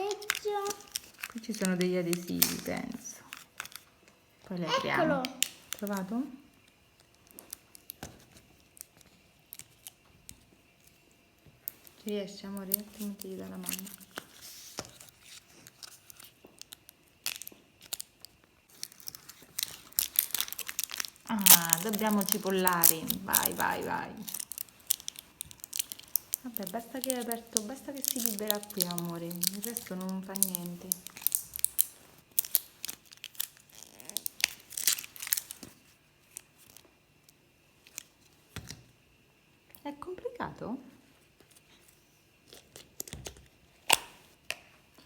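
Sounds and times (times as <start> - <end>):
plastic packaging clicks and taps: 0.0 - 2.7, 7.0 - 10.4
plastic packaging being torn: 0.0 - 3.9, 5.3 - 6.1, 11.7 - 36.8, 42.5 - 44.3.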